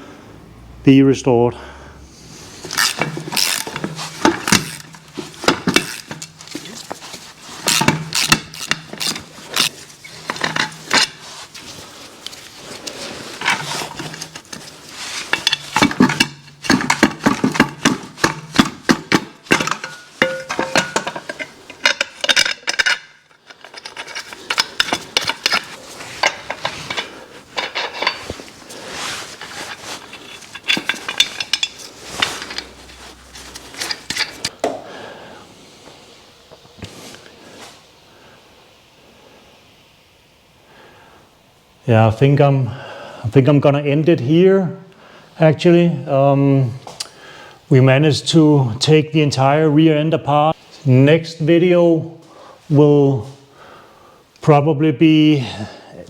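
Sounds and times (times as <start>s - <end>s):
metal tools clinking and clattering: 2.6s - 11.7s, 12.4s - 34.5s.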